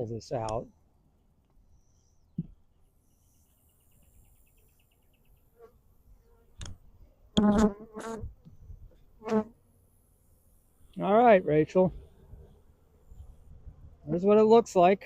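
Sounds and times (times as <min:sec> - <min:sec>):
honeybees buzzing: 0:07.4 - 0:08.3.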